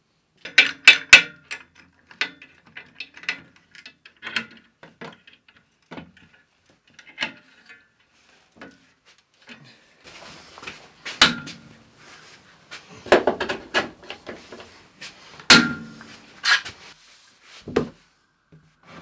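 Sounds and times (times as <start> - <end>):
hard objects knocking on workbench: 10.1 - 16.2
rattles and scrapes: 10.1 - 17.0.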